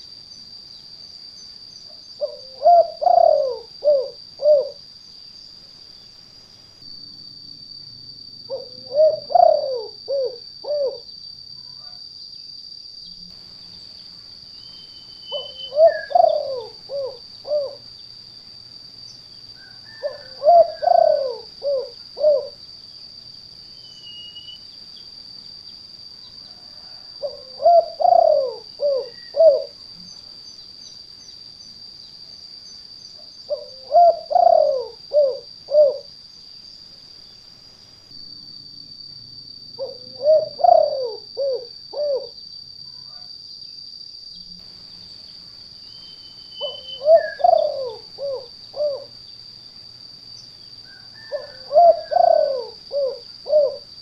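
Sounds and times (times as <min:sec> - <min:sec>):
dove cooing: 0:02.2 - 0:04.8, 0:08.5 - 0:11.1, 0:15.3 - 0:17.9, 0:19.6 - 0:22.6, 0:26.5 - 0:29.8, 0:33.5 - 0:36.1, 0:39.8 - 0:42.4, 0:46.6 - 0:49.2, 0:50.9 - 0:53.9.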